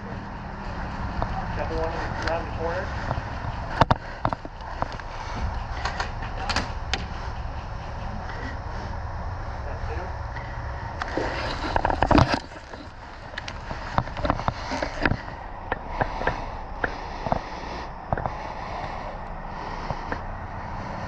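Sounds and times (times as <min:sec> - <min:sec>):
sharp clicks and knocks: 0:01.2 - 0:08.6, 0:10.4 - 0:17.5.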